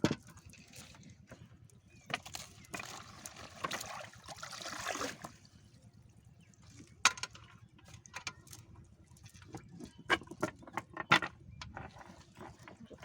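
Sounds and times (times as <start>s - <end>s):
water splashing and trickling: 0.0s - 13.0s.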